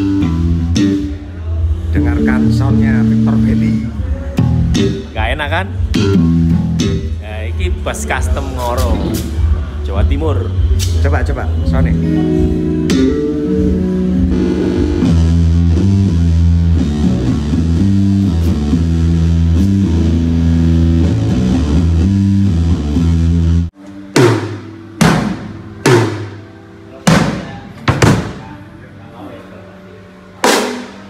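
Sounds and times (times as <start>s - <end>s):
electric bass low notes: 0.0s - 23.8s.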